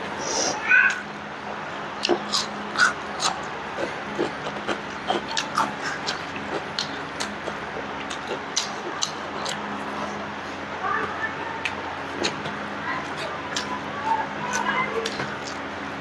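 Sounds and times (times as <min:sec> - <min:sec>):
wet chewing smacks: 0:02.0 - 0:10.2, 0:11.0 - 0:13.9.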